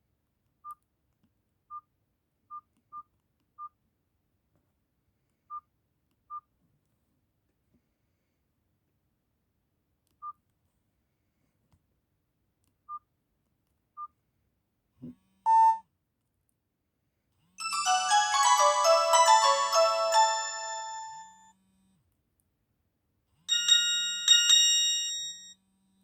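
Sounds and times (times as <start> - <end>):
phone key beeps: 15.5 - 15.8
polyphonic ringtone: 17.6 - 21.4, 23.5 - 25.5.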